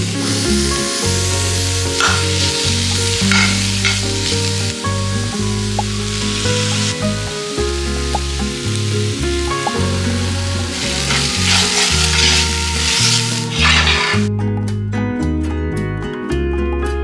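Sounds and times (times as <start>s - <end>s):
spatula scraping pan: 0.0s - 5.0s, 8.0s - 14.3s
food sizzling in oil: 0.0s - 14.3s
background music: 0.0s - 17.0s.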